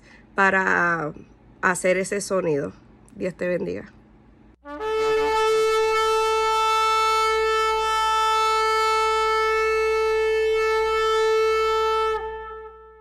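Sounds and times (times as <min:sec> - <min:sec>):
horn blown in long note: 0:04.6 - 0:13.0.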